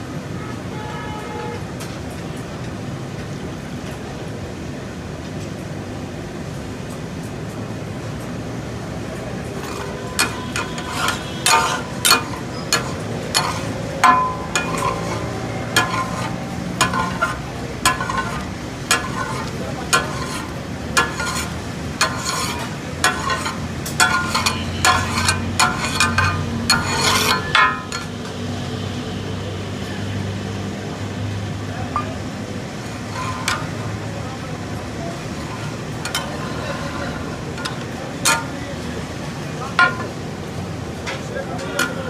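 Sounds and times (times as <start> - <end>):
steel spatulas clanging on griddle: 9.4 - 28.4, 31.9 - 39.0, 39.6 - 40.3, 41.1 - 42.0
food sizzling: 9.8 - 28.2.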